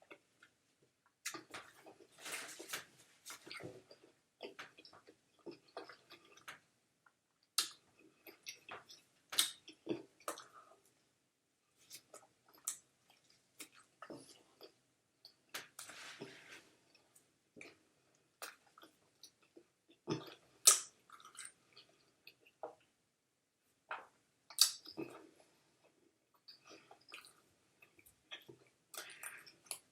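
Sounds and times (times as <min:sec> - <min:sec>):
person chewing with wet smacks: 0:03.3 - 0:06.6, 0:07.5 - 0:10.8, 0:11.9 - 0:15.8, 0:18.4 - 0:22.9, 0:23.9 - 0:29.9.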